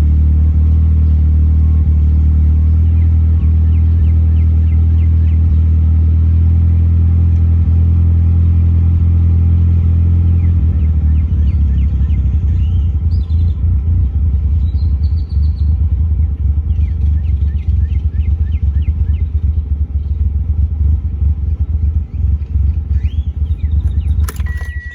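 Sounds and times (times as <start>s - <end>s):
car engine idling roughly: 12.1s - 24.9s.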